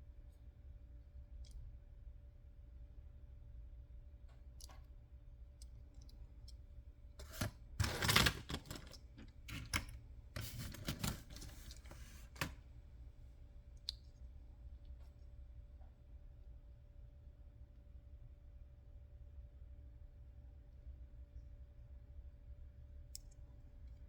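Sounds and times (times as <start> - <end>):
faint steady hum: 0.0 - 24.0
clattering and rustling: 10.4 - 12.6.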